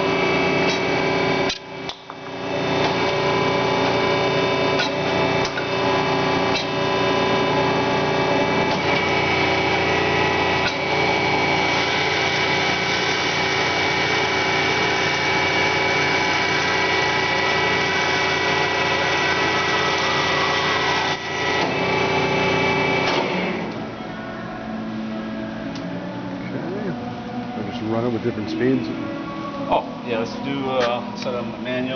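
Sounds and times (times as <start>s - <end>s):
band saw motor whining: 0.0s - 24.0s.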